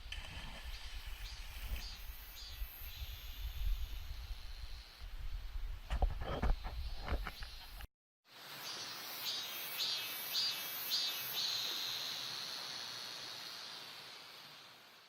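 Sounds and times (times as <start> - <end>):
insect chirring: 0.8 - 5.0.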